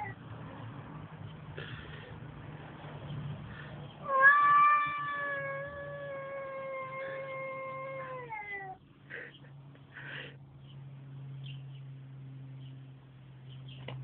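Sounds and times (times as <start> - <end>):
cat yowling: 4.0 - 8.8.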